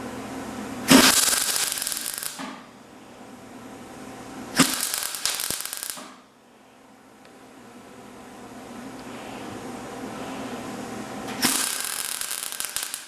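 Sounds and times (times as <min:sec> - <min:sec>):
power tool cutting sheet steel: 0:11.4 - 0:13.0.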